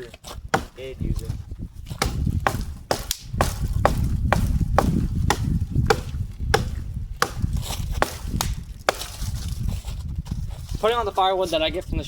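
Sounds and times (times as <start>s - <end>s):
axe chopping wood: 0.3s - 1.0s, 1.8s - 9.4s.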